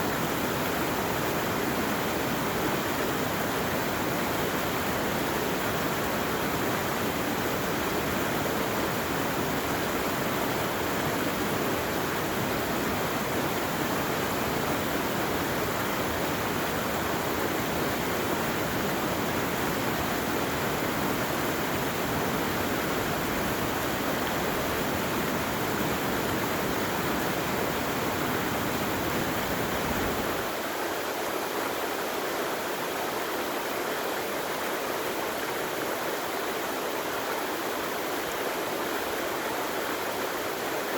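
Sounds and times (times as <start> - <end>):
stream rushing: 0.0 - 40.9.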